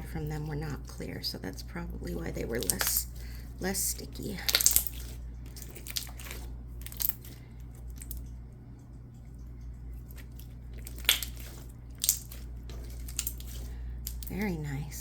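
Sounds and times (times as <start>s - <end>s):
low steady hum: 0.0s - 15.0s
slime squished by hand: 4.0s - 8.4s, 10.0s - 14.5s
sticky slime pops: 10.9s - 14.3s.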